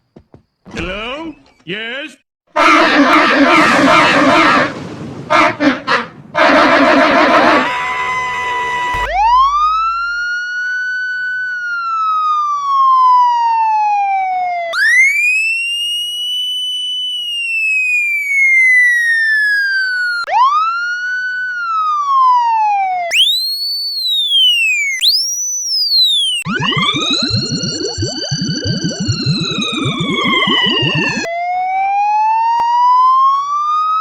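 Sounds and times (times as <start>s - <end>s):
police siren wailing: 2.6s - 4.8s, 5.4s - 34.0s
steady beep: 7.6s - 10.3s, 24.1s - 31.3s.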